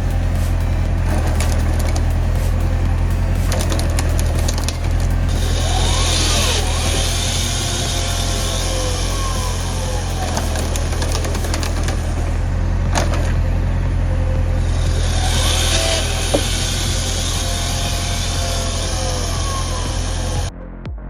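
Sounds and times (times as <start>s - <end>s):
heavy engine running: 0.0s - 20.5s.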